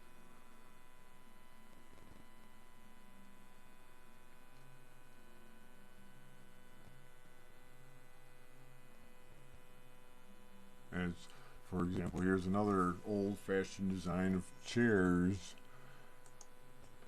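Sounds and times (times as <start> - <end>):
faint electrical mains hum: 0.0 - 17.0
low hiss: 10.5 - 17.0.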